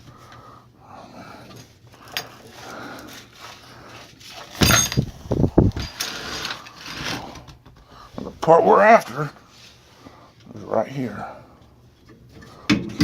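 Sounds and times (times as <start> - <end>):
metal parts clunking and rattling: 4.2 - 8.3, 12.4 - 13.0
metal parts click: 4.4 - 5.1.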